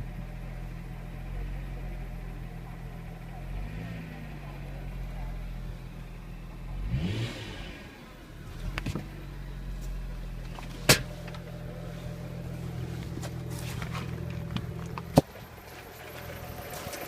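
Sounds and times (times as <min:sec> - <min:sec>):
car engine revving: 0:03.2 - 0:15.2.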